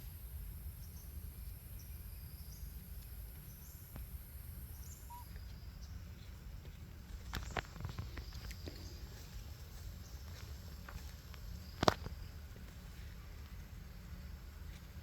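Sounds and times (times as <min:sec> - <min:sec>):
faint high-pitched chirps: 0:04.7 - 0:06.1.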